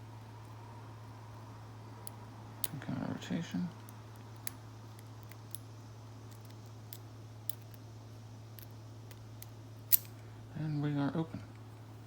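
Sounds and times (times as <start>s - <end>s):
steady low hum: 0.0s - 12.0s
lock pick metallic clicks: 8.6s - 10.2s.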